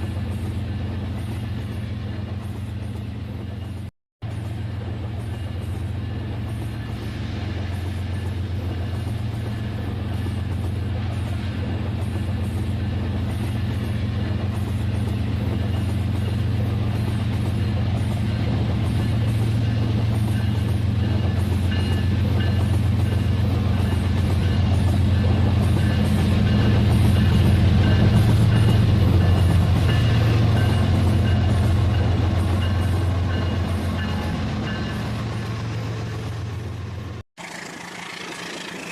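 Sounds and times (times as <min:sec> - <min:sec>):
toy train motor hum: 0:37.4 - 0:38.9.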